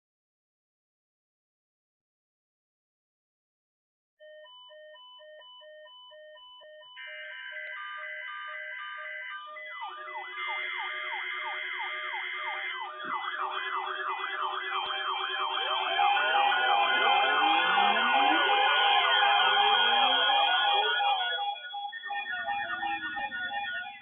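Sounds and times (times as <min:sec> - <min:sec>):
rising and falling siren sweeps: 0:06.9 - 0:24.0
pulsed electronic beeps: 0:07.0 - 0:24.0.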